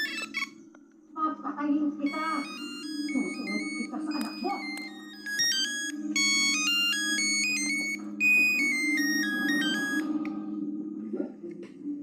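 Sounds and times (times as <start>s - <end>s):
monophonic phone ringtone beeps: 0.0s - 0.7s, 2.0s - 10.3s.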